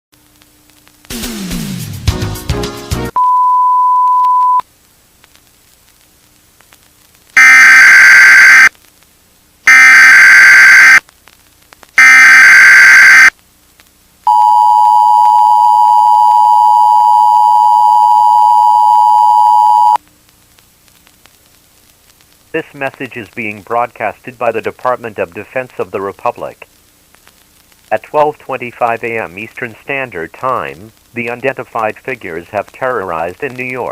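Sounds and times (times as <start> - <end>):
single steady beep: 3.2 - 4.6, 14.3 - 20.0
screeching data bursts: 7.4 - 8.7, 9.7 - 11.0, 12.0 - 13.3.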